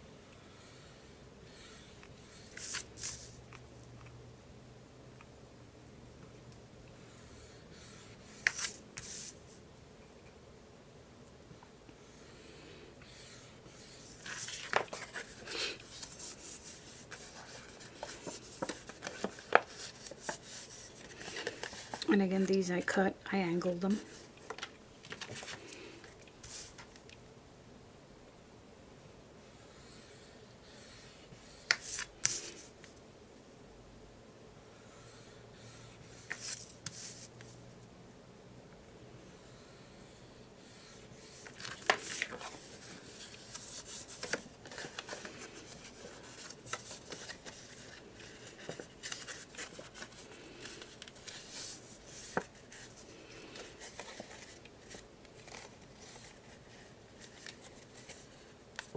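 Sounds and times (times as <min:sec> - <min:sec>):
paper rustling and rubbing: 0:02.3 - 0:03.4, 0:07.9 - 0:09.5, 0:13.2 - 0:22.0, 0:24.0 - 0:25.8, 0:26.4 - 0:27.0, 0:36.2 - 0:37.4, 0:40.8 - 0:58.9.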